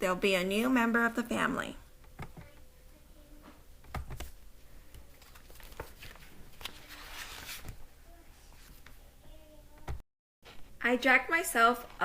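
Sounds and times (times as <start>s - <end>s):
paper page rustling: 5.0s - 7.8s.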